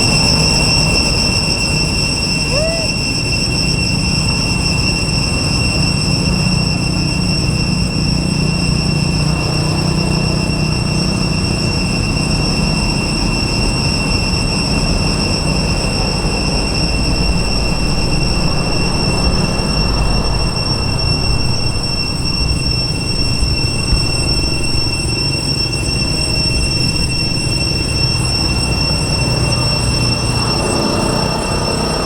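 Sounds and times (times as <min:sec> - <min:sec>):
high-pitched whine: 0:00.0 - 0:32.0
loud rumbling noise: 0:11.1 - 0:32.0.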